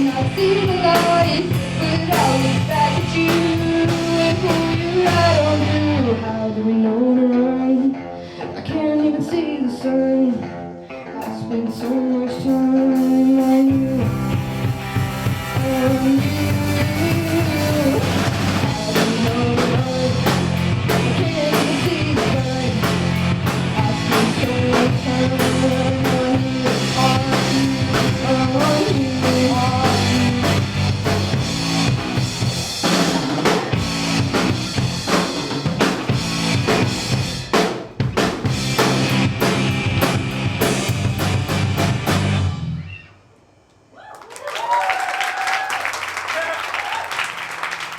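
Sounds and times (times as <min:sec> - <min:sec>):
drum kit beat: 0:00.0 - 0:06.0, 0:13.0 - 0:42.5
rock band playing: 0:00.0 - 0:42.9.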